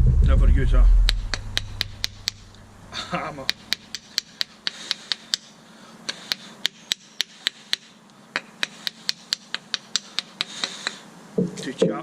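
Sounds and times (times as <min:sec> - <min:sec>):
faint steady hum: 0:00.0 - 0:12.0
rapid sharp tool clicks: 0:01.1 - 0:02.6, 0:03.4 - 0:11.0.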